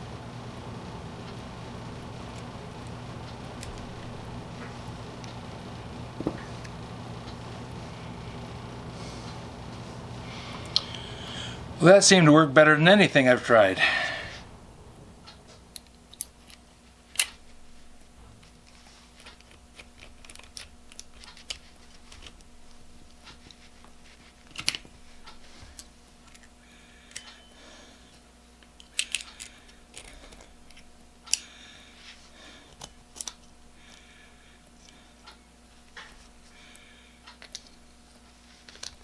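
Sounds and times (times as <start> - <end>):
faint steady hum: 0.0 - 39.0
small metal parts clicking: 28.8 - 31.5.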